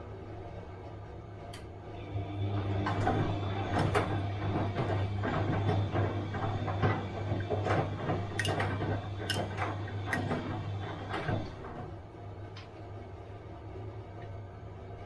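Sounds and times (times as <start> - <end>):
washing machine hum: 0.0 - 15.0
drum clicking and knocking: 2.8 - 11.8.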